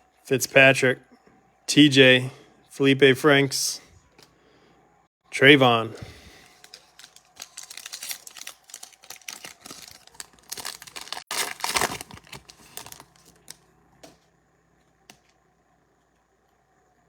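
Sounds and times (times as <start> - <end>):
wrapper crinkling and tearing: 6.4 - 13.6.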